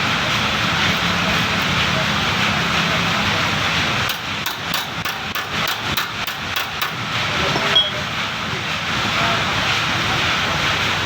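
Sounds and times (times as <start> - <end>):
sharp metallic taps: 4.1 - 7.0.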